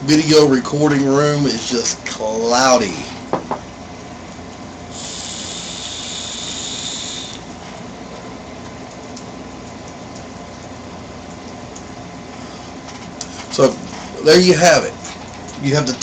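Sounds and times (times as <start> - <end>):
low steady hum: 0.0 - 16.0
air hissing through vape: 4.9 - 7.5.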